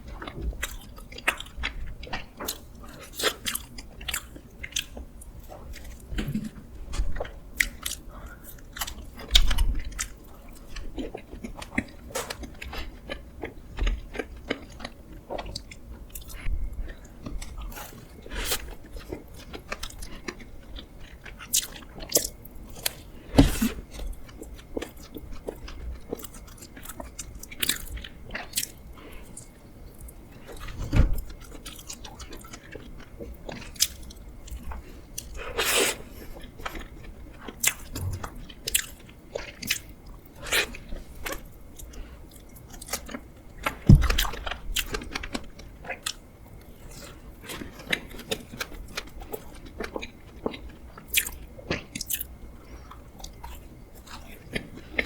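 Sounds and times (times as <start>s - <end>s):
chewing and biting: 0.0s - 55.0s.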